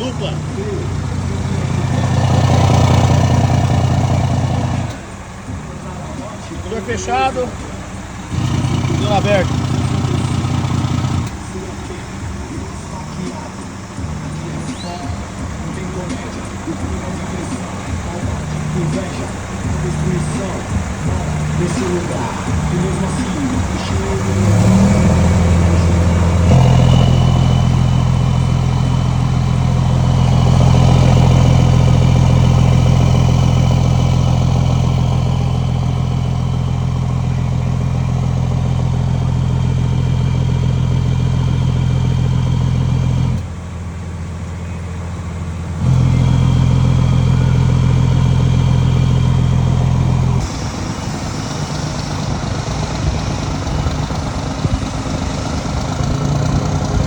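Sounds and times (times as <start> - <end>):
diesel truck engine rumbling: 0.0 - 57.0.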